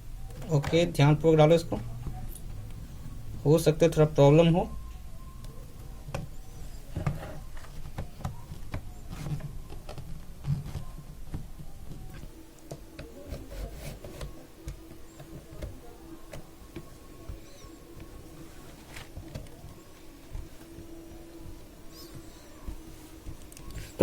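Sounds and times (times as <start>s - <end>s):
light scraping and rubbing: 13.0s - 24.0s.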